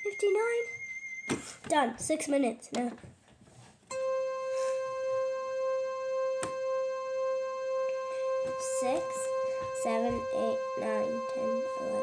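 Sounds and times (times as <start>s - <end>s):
buzzy electronic tone: 3.9s - 12.0s.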